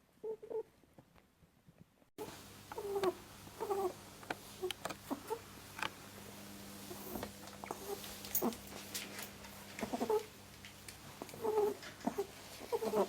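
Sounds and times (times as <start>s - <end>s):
rabbit making soft calls: 0.2s - 0.7s, 2.2s - 5.6s, 6.8s - 8.6s, 9.8s - 10.4s, 11.2s - 13.0s.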